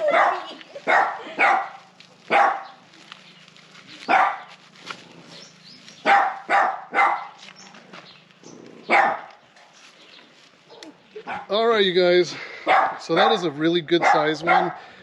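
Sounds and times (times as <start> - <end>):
dog barking: 0.0 - 2.8, 4.1 - 4.5, 6.0 - 7.4, 8.9 - 9.3, 10.7 - 11.6, 12.6 - 14.9.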